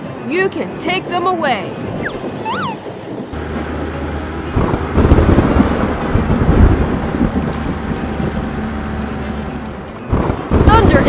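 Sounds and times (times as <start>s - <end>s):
steady low hum: 3.4s - 10.1s
rain: 3.4s - 11.0s
thunder rumbling: 3.4s - 11.0s.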